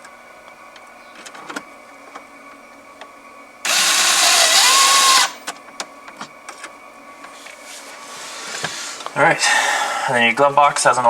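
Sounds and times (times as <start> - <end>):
electric drill whining: 3.7 - 5.4.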